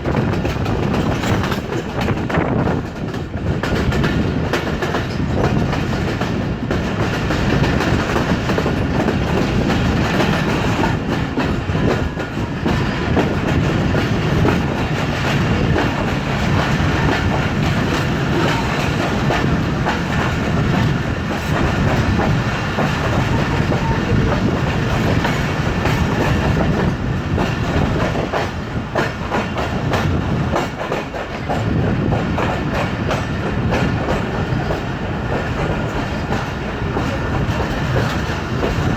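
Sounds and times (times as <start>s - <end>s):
train rumble: 0.0s - 38.9s
train wheels clicking on rails: 0.0s - 38.9s.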